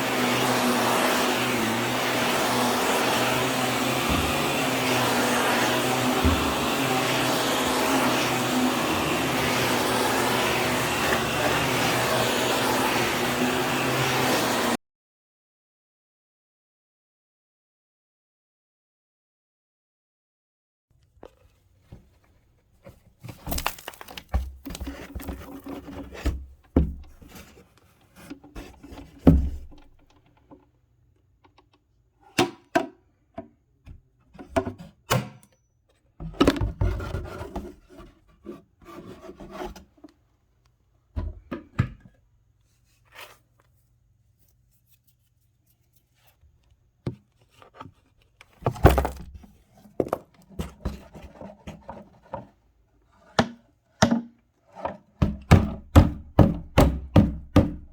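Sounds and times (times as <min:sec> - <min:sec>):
handling knocks and thuds: 0:48.7 - 0:51.0.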